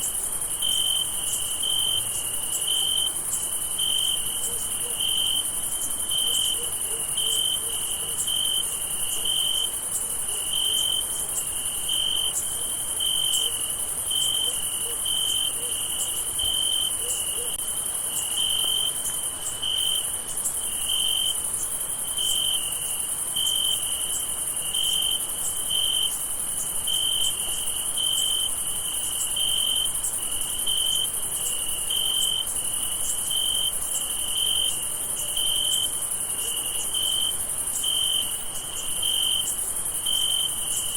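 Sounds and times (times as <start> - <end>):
cricket chirping: 0.0 - 40.9.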